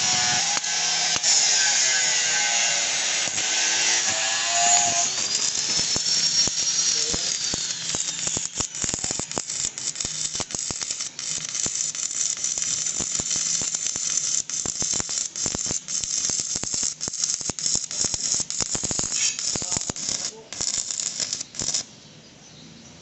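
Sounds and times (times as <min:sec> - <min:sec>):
arc welding crackle and hiss: 0:00.0 - 0:22.0.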